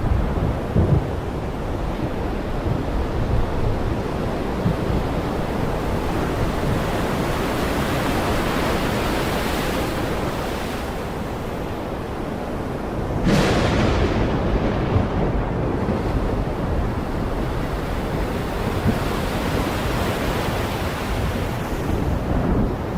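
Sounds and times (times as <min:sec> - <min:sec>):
heavy rain pouring: 0:00.0 - 0:22.9.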